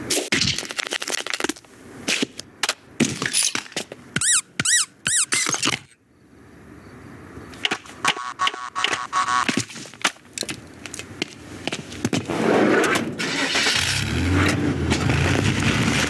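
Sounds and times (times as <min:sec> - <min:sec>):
squeaks gliding in pitch: 0:04.2 - 0:06.0, 0:08.0 - 0:09.6
sharp knocks and scuffling clicks: 0:07.5 - 0:13.1
short ringing tone: 0:08.0 - 0:09.5.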